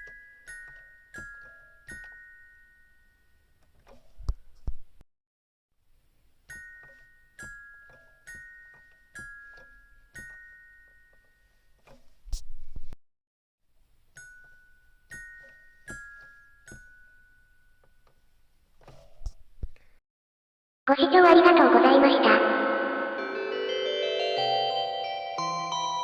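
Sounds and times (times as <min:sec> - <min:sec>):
electronic two-tone chime melody: 0:22.2 - 0:26.0.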